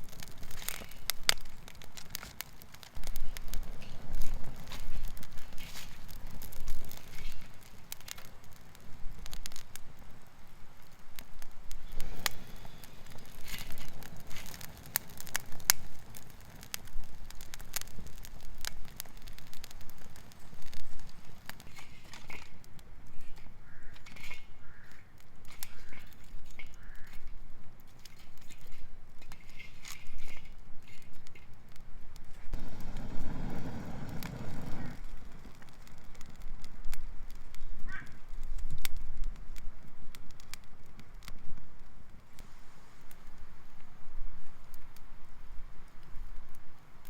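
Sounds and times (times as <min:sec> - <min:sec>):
campfire crackling and popping: 0:00.0 - 0:47.0
wind on microphone: 0:32.5 - 0:36.8.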